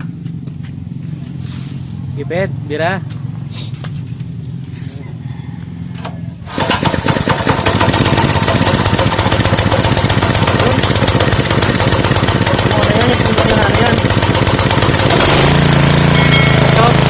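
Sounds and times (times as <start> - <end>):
water pump engine running: 6.4 - 17.0
low hum: 15.8 - 17.0.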